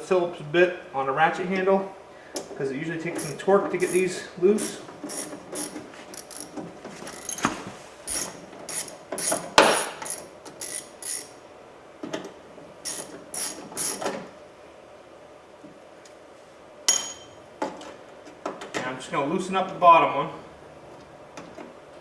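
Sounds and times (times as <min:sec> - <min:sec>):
ratchet screwdriver clicking: 0:03.2 - 0:07.5, 0:08.1 - 0:11.3, 0:12.9 - 0:14.1.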